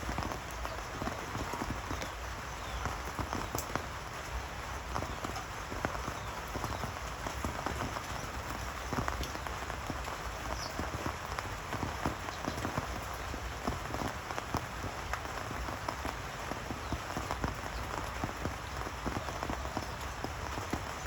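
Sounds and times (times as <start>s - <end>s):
rain falling: 0.0s - 21.0s
raindrops hitting a surface: 0.0s - 21.0s.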